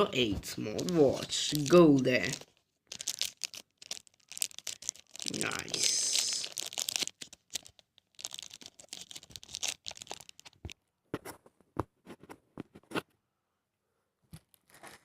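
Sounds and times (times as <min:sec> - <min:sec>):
plastic packaging crinkling: 0:00.8 - 0:10.8.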